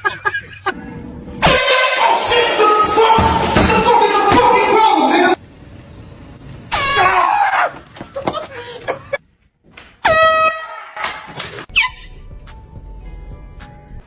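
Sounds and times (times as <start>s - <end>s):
voices yelling and shouting: 0.6s - 5.4s
air horn blare: 1.4s - 3.1s, 10.0s - 11.0s.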